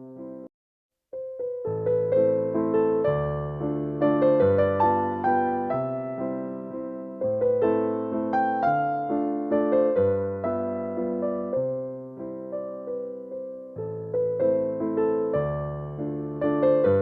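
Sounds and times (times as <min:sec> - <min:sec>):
gentle piano piece: 0:00.0 - 0:00.5, 0:01.1 - 0:17.0.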